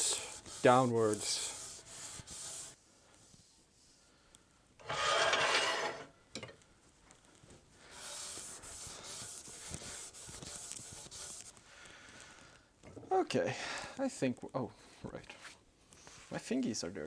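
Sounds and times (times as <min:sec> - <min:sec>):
hand rubbing metal: 0:00.0 - 0:02.8, 0:07.8 - 0:11.5.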